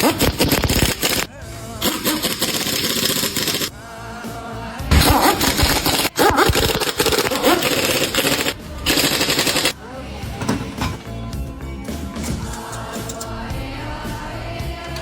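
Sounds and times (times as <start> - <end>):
impact wrench hammering: 1.8 - 3.7, 4.9 - 9.7.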